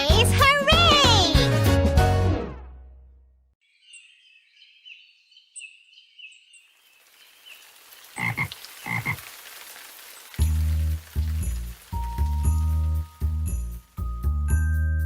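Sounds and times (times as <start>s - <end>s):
music: 0.0s - 3.5s, 10.4s - 15.0s
steady hiss: 7.0s - 14.2s.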